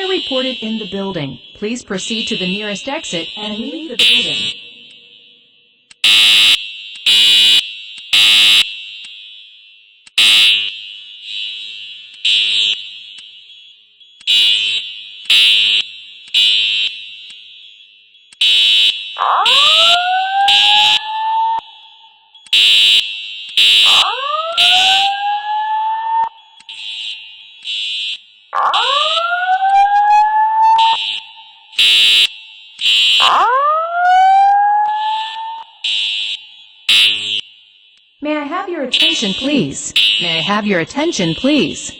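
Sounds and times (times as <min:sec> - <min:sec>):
fire alarm horn blasts: 0:00.0 - 0:41.9.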